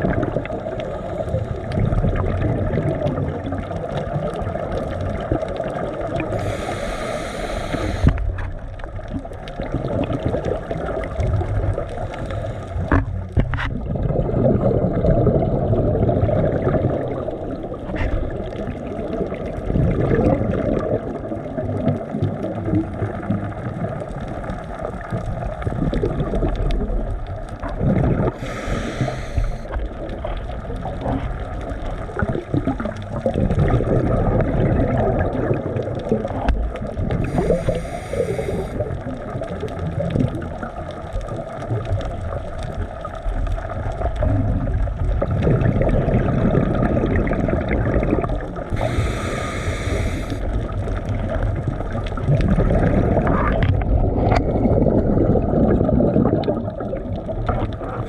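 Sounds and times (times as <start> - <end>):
water rushing and gurgling: 0.0 - 58.0
brief hissing bursts: 6.4 - 8.2, 48.8 - 50.4.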